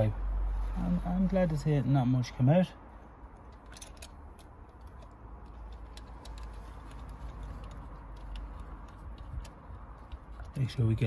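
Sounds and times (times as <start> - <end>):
light metal clicks and ticks: 3.3 - 10.6.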